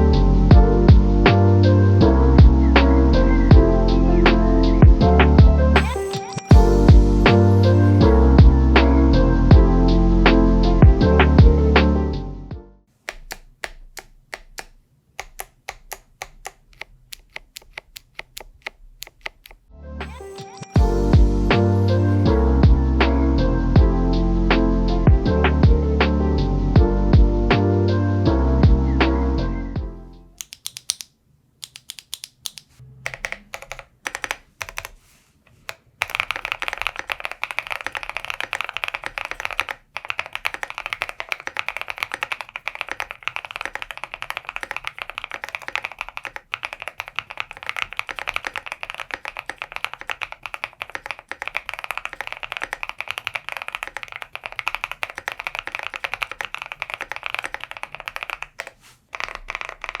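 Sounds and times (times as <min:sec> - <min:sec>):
mechanical keyboard typing: 0:13.1 - 0:20.8, 0:30.4 - 0:35.0, 0:35.6 - 1:00.0.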